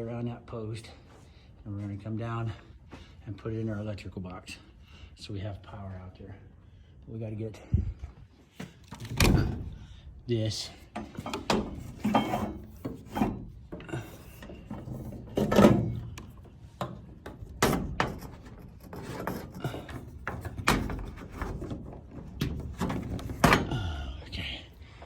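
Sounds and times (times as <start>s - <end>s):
wire scraping against wood: 11.0s - 23.8s.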